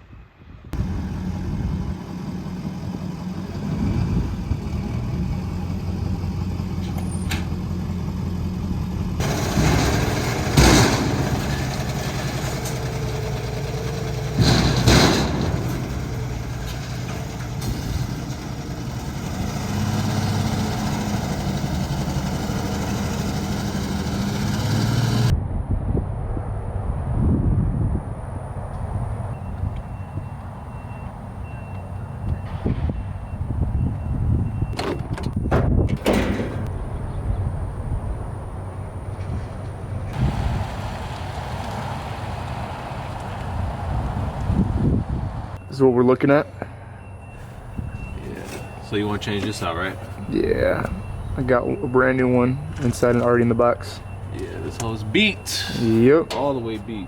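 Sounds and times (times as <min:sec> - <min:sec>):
vehicle engine running: 0:00.8 - 0:25.3, 0:47.2 - 0:57.0.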